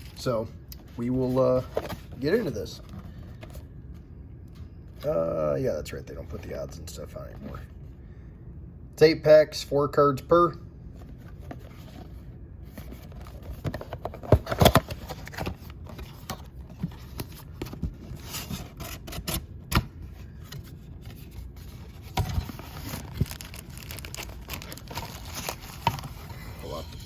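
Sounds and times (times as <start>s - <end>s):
cardboard scraping: 20.2s - 27.0s
wrapping tearing and crinkling: 21.2s - 27.0s.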